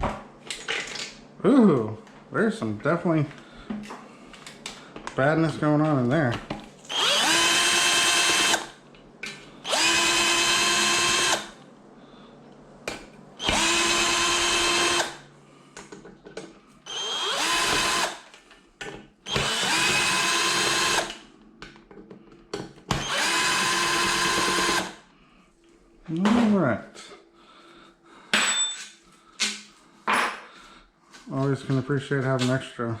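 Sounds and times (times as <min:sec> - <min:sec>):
power drill whining: 0:06.9 - 0:08.8, 0:09.6 - 0:11.6, 0:13.4 - 0:15.2, 0:16.9 - 0:18.3, 0:19.3 - 0:21.2, 0:22.9 - 0:25.0.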